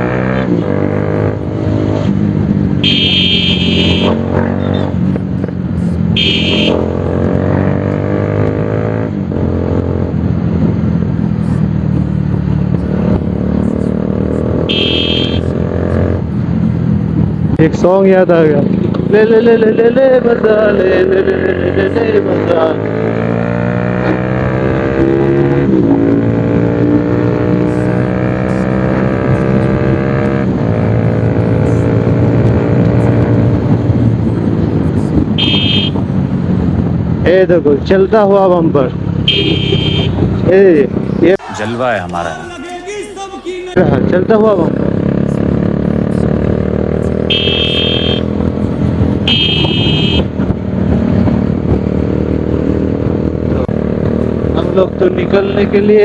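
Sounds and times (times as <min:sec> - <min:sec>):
motorcycle engine cruising: 0:00.0 - 0:41.3, 0:43.8 - 0:56.0
vehicle horn: 0:02.8 - 0:04.2, 0:06.2 - 0:06.9, 0:14.6 - 0:15.5, 0:35.4 - 0:36.0, 0:39.2 - 0:40.2, 0:47.2 - 0:48.4, 0:49.2 - 0:50.3
motorcycle engine riding: 0:43.8 - 0:56.0.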